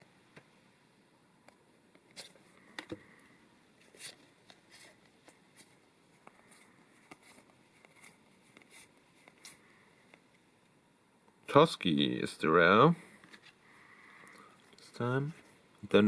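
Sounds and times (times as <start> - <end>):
cards rustling and tapping: 3.8 - 10.4.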